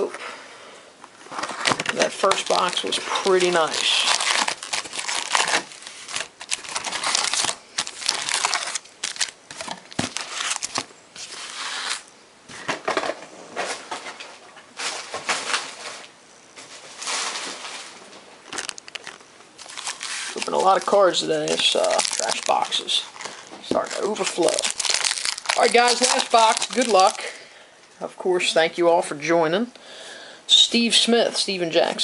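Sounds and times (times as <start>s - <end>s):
plastic wrappers crinkling: 1.3s - 12.0s, 16.7s - 27.4s.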